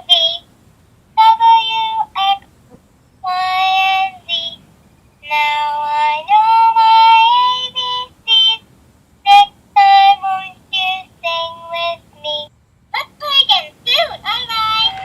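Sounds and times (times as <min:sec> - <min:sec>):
high-pitched child-like voice singing: 0:00.0 - 0:00.4, 0:01.2 - 0:02.4, 0:03.2 - 0:04.6, 0:05.2 - 0:08.6, 0:09.3 - 0:15.0.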